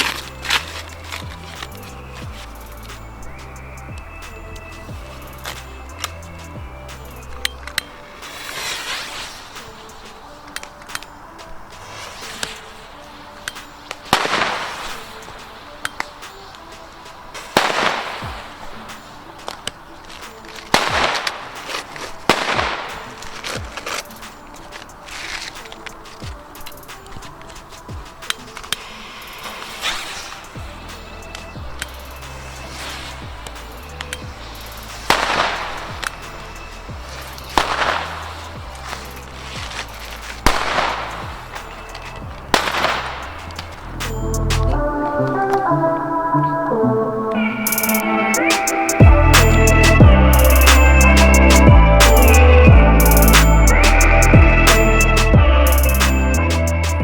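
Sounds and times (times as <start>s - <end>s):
background music with bass line: 0.0s - 7.9s, 30.5s - 57.0s
small firecracker cracks: 5.4s - 44.2s
firecracker bangs: 14.1s - 15.6s, 17.5s - 18.6s, 20.7s - 23.8s, 35.1s - 36.4s, 37.5s - 39.0s, 39.6s - 44.2s.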